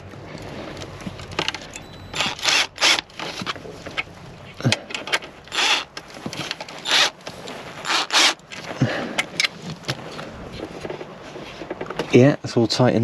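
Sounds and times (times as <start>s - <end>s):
power drill rasping bursts: 2.1s - 3.0s, 5.5s - 5.9s, 6.8s - 7.2s, 7.8s - 8.4s.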